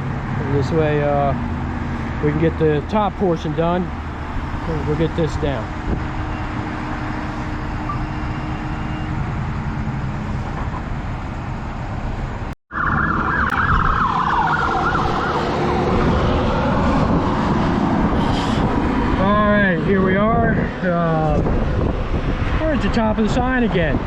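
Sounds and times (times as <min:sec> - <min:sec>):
heavy engine running: 0:00.0 - 0:12.6.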